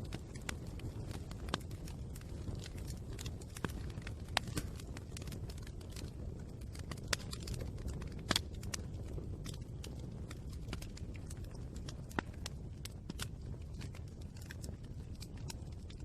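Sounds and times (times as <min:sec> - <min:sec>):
fire crackling and popping: 0:00.0 - 0:16.0
low rumble of flame: 0:00.0 - 0:16.0.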